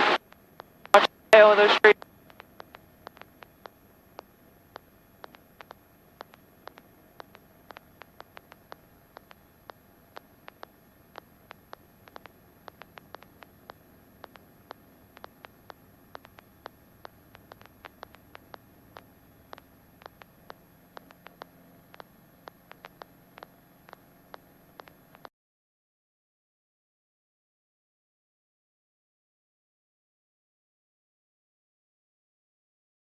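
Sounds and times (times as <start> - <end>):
faint sharp clicks: 0.0 - 25.3
low steady hiss: 0.0 - 25.3.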